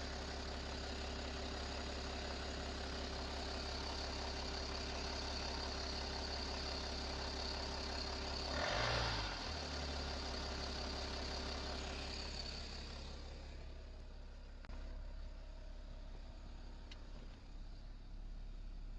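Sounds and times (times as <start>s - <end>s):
diesel engine idling: 0.0s - 18.9s
engine revving: 8.4s - 10.1s.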